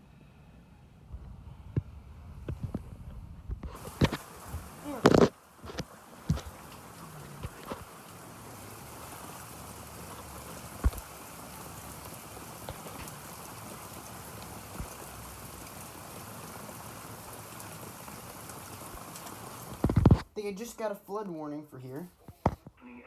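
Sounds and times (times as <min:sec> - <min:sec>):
water rushing in flooding creek: 0:03.6 - 0:20.2.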